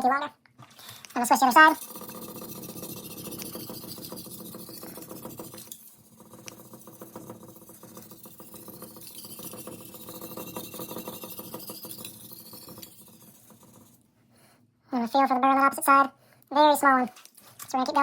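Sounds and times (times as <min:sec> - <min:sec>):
knife scraping on sharpening stone: 0:01.7 - 0:14.0.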